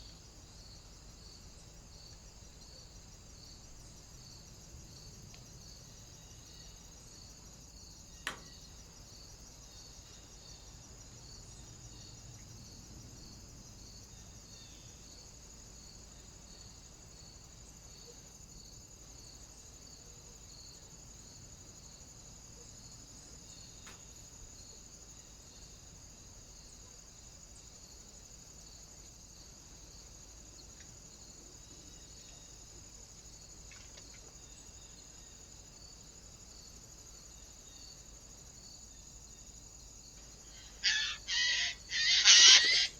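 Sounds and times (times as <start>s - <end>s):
sharp click: 8.3s - 8.5s.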